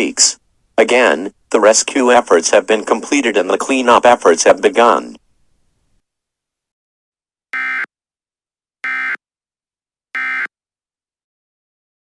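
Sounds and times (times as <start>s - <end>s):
buzzing digital data tones: 7.6s - 7.9s, 8.8s - 9.2s, 10.2s - 10.5s.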